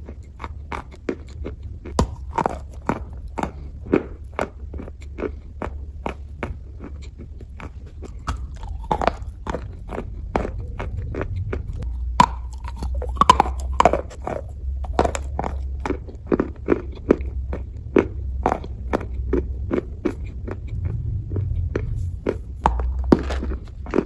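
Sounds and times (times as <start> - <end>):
clay being chewed and crunching: 0.0 - 24.0.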